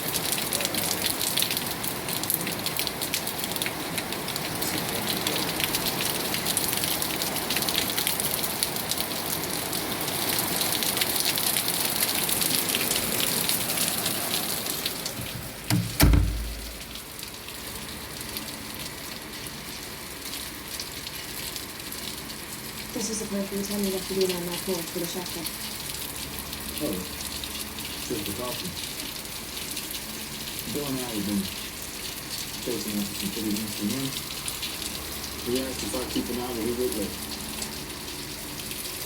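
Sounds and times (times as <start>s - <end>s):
rain falling: 0.0s - 39.0s
loud low thump: 15.2s - 17.0s.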